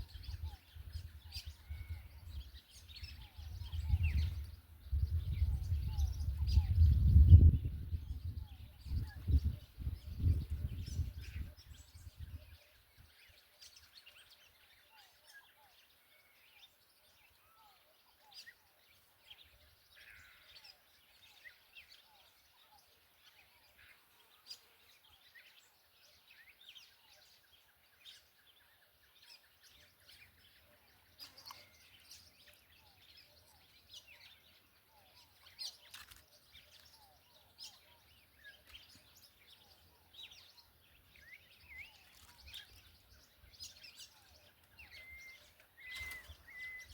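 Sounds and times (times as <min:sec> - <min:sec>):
short high chirps and calls: 0:43.7 - 0:46.9.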